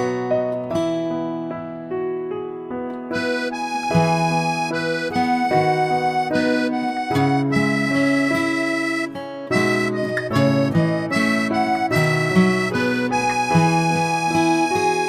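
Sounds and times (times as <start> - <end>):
reedy accordion-like instrumental tune: 3.1 - 15.0.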